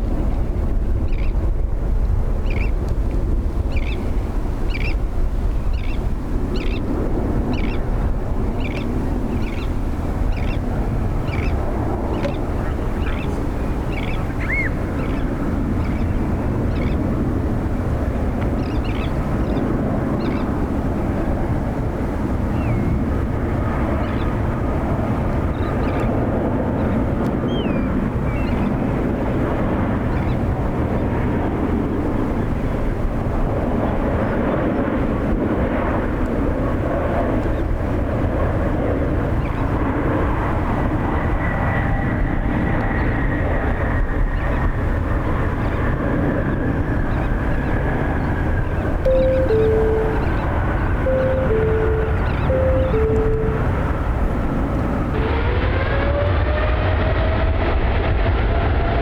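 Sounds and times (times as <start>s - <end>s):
distant jet aircraft roar: 0.0s - 59.0s
small bird chirping: 12.2s - 16.1s.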